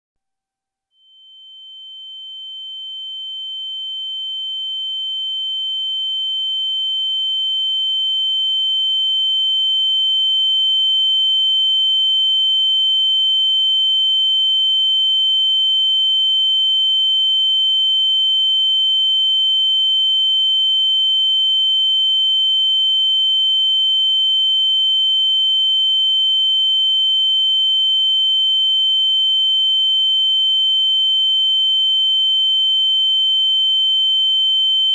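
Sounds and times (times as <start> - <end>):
high-pitched ringing tone: 1.0 - 7.7.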